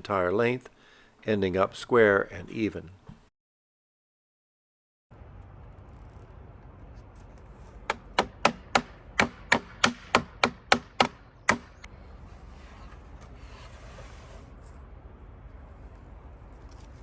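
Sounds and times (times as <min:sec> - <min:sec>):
hammer striking wood: 0:07.9 - 0:11.9.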